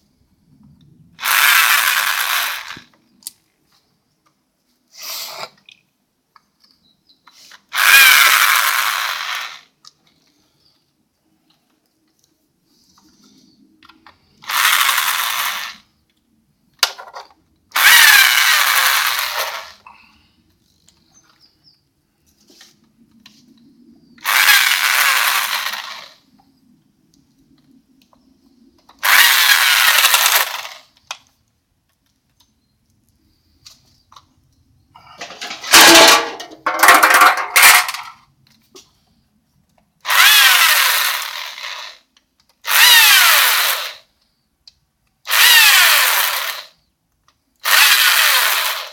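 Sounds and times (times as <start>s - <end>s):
power drill bursts: 1.2s - 2.9s, 7.7s - 9.7s, 14.4s - 15.8s, 17.8s - 19.8s, 24.2s - 26.2s, 29.0s - 30.9s, 40.1s - 42.0s, 42.6s - 44.1s, 45.3s - 46.8s, 47.6s - 48.9s.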